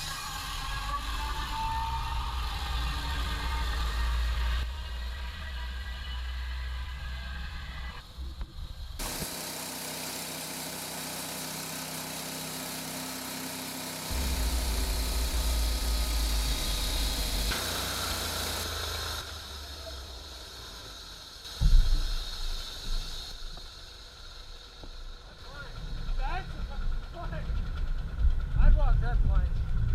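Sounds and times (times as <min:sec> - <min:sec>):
sawmill engine and saw running: 0:00.0 - 0:29.9.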